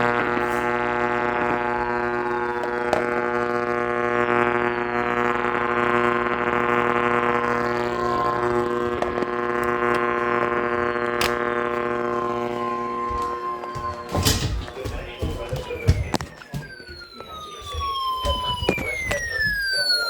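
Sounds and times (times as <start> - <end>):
steady electronic drone: 0.0 - 20.0.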